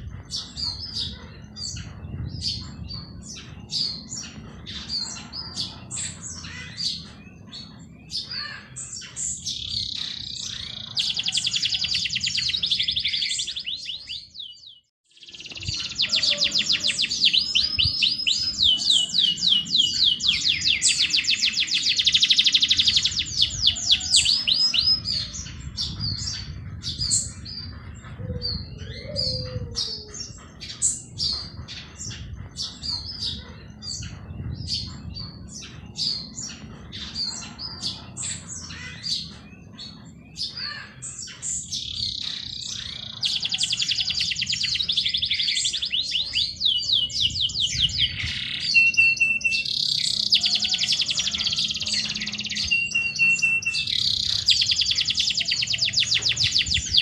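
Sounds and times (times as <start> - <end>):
songbirds chirping and singing: 0.0 - 57.0.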